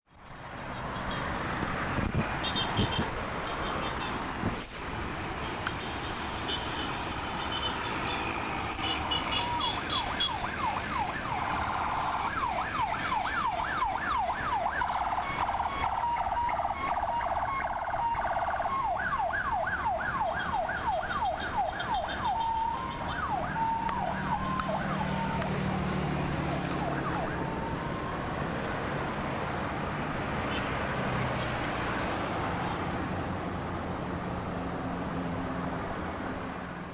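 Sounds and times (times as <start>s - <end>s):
traffic noise: 0.0s - 36.9s
ambulance siren yelping: 8.1s - 28.6s.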